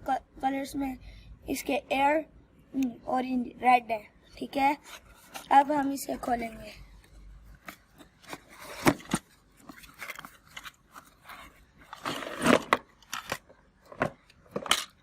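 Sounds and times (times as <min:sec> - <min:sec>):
cardboard and plastic crinkling: 0:07.6 - 0:15.0.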